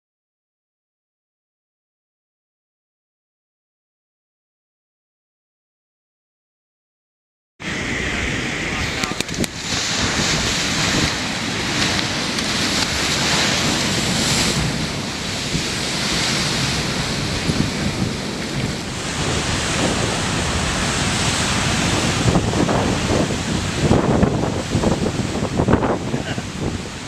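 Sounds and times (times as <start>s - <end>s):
waves breaking on shore: 7.6s - 27.0s
wind buffeting microphone: 7.6s - 27.0s.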